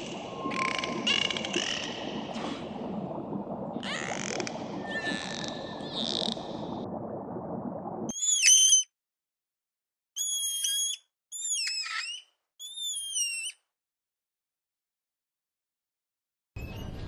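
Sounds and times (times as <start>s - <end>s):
animal whistled calls: 8.1s - 8.9s, 10.2s - 13.6s.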